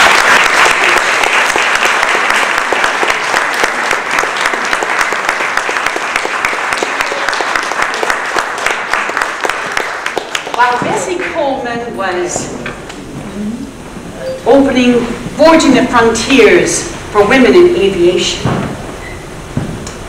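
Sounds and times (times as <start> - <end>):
audience applauding: 0.0 - 11.4.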